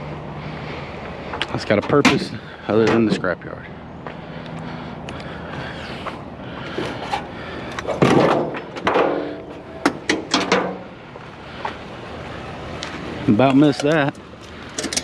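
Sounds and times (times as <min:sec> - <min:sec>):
scrap metal clanking: 0:07.8 - 0:10.9.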